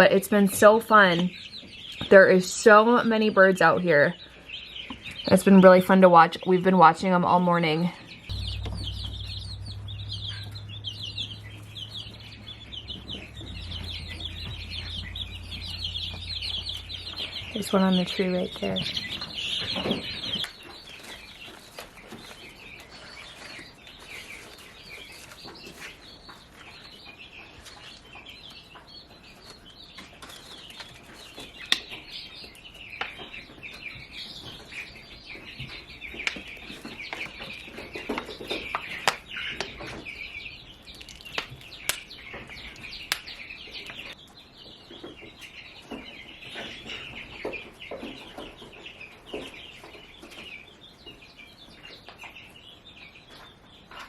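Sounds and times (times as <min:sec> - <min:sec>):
baby chicks peeping: 0:00.0 - 0:54.0
sharp knocks: 0:08.3 - 0:17.2.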